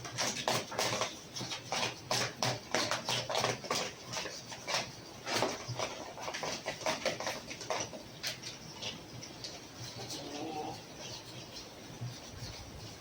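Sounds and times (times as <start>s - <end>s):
sharp clicks and scrapes: 0.0s - 10.2s
chickens clucking: 9.9s - 11.8s
hen calling: 10.0s - 11.3s.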